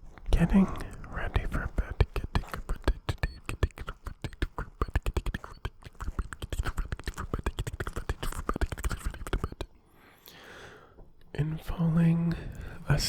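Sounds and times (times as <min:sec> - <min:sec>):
lip smacks and tongue clicks: 0:00.1 - 0:09.8.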